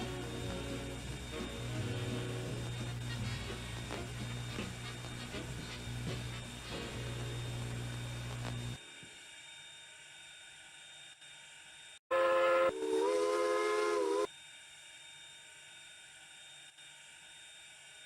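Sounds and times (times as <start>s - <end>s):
steam locomotive whistle: 0.0s - 7.0s, 12.1s - 14.3s
faint steady hiss: 0.0s - 12.0s.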